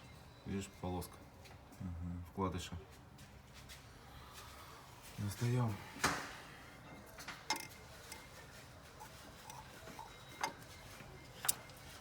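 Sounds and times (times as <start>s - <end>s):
light metallic clicks and clinks: 7.2s - 8.4s.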